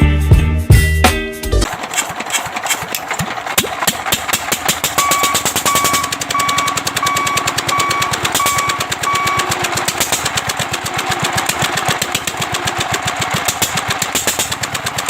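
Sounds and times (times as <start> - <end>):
music: 0.0 - 1.7
knocking engine clatter: 1.6 - 15.0
short electronic beeps: 5.0 - 9.6.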